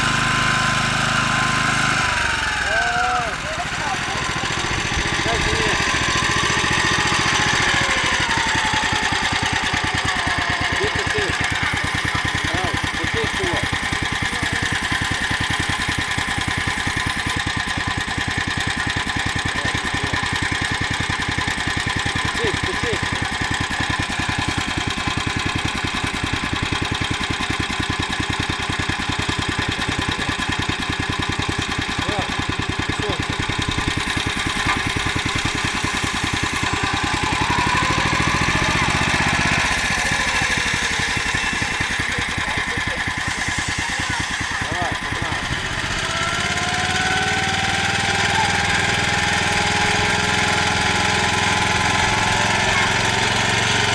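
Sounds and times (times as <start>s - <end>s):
tractor engine chugging: 0.0s - 53.9s.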